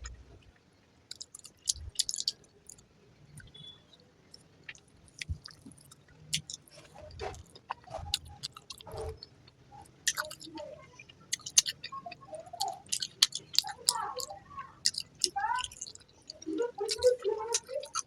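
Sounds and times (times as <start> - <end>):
close chewing: 1.1 - 2.8, 4.3 - 18.0
lip clicks: 4.7 - 6.7.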